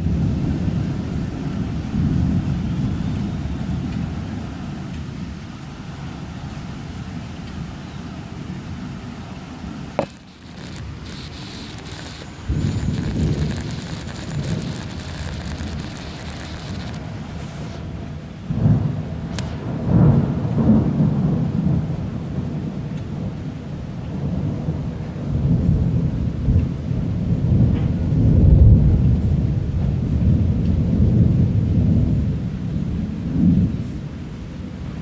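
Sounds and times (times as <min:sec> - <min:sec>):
steady rain: 0:00.0 - 0:35.0
thunder rumbling: 0:10.0 - 0:33.8
sharp thunder crack: 0:18.5 - 0:21.9.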